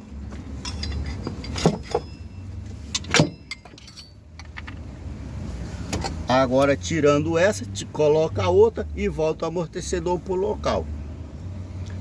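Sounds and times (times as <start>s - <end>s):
hand tools clinking on steel: 0.5s - 4.8s.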